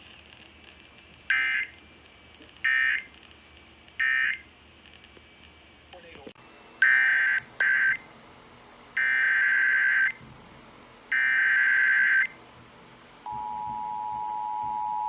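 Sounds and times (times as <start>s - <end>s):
two-tone attention signal: 13.3s - 15.0s.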